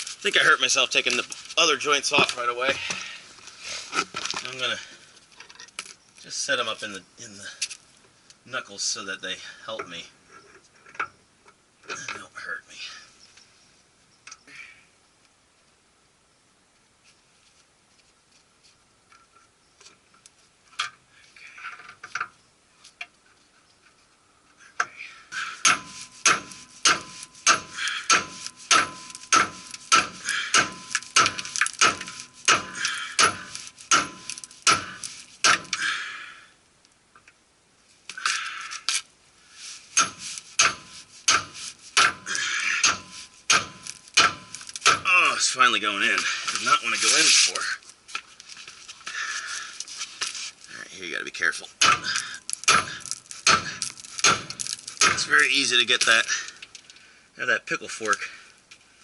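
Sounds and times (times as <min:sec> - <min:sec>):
hammer striking metal fork: 0:25.6 - 0:35.8.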